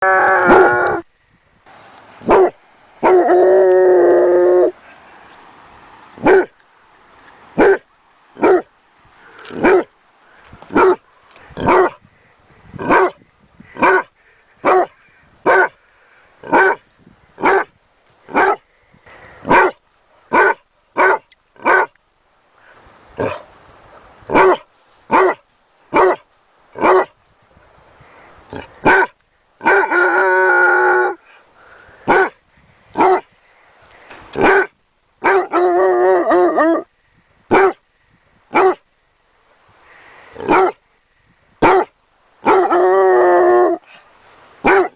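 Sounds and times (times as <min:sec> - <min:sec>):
puppy howling: 0:00.0 - 0:01.0
puppy barking: 0:02.2 - 0:03.3, 0:06.2 - 0:06.5, 0:07.6 - 0:07.8, 0:08.4 - 0:08.7, 0:09.6 - 0:09.9, 0:10.7 - 0:11.0, 0:11.6 - 0:12.0, 0:13.8 - 0:14.9, 0:15.5 - 0:15.8, 0:16.5 - 0:16.8, 0:18.3 - 0:18.6, 0:19.5 - 0:21.9, 0:24.3 - 0:26.2, 0:28.8 - 0:30.0, 0:32.1 - 0:32.4, 0:33.0 - 0:33.3, 0:34.4 - 0:36.8, 0:37.5 - 0:37.8, 0:38.5 - 0:38.8, 0:40.4 - 0:40.8, 0:41.6 - 0:42.8, 0:44.6 - 0:44.9.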